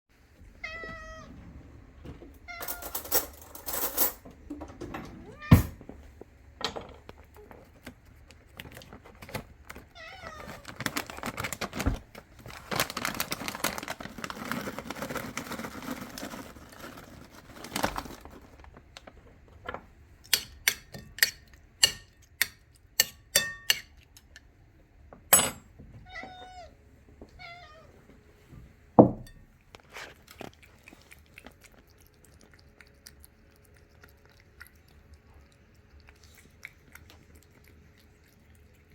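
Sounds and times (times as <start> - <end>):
cat meowing: 0.6 - 1.4, 5.2 - 5.8, 9.9 - 10.8, 26.0 - 28.0.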